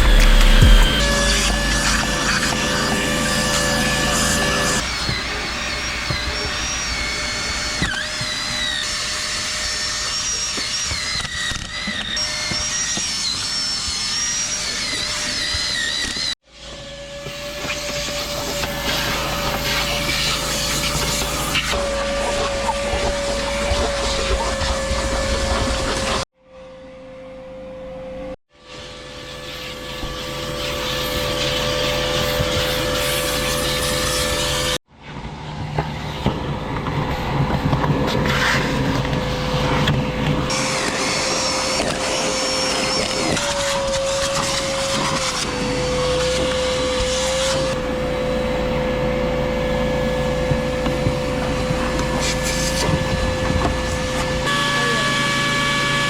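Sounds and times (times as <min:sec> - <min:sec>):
machine motor whining: 0:00.0 - 0:16.3, 0:38.3 - 0:56.0.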